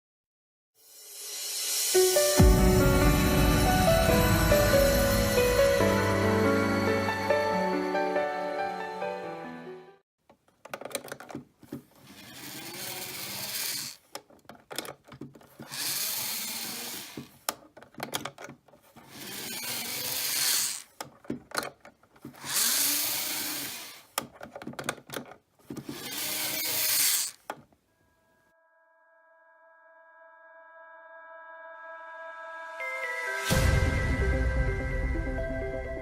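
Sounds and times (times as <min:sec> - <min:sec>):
model train motor whirring: 0:12.0 - 0:14.1, 0:15.5 - 0:17.4, 0:19.0 - 0:20.9, 0:22.3 - 0:24.2, 0:25.8 - 0:27.5.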